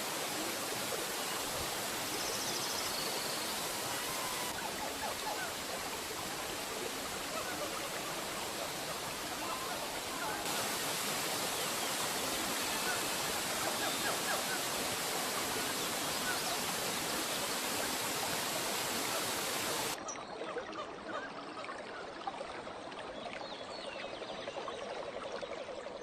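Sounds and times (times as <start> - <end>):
running water: 0.0 - 20.0
waterfall rushing: 0.0 - 20.0.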